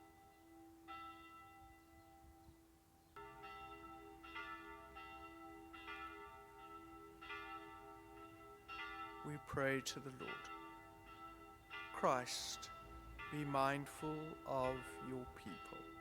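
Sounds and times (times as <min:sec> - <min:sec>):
church bell tolling faintly: 0:00.0 - 0:02.6, 0:03.2 - 0:16.0.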